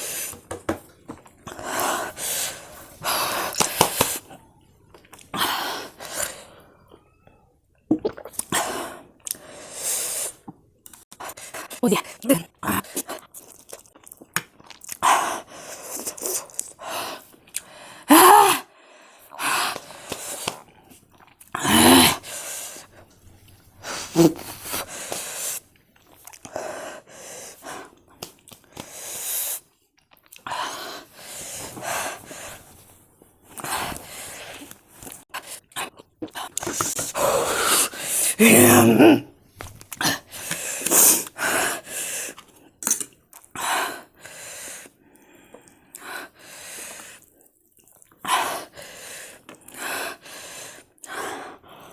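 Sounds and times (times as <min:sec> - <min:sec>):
sharp gasping breaths: 0:01.5 - 0:04.3, 0:40.0 - 0:42.4, 0:43.6 - 0:47.3, 0:48.2 - 0:51.9
person chewing noodles: 0:08.0 - 0:11.2, 0:12.6 - 0:17.8, 0:19.2 - 0:31.2, 0:39.8 - 0:51.2.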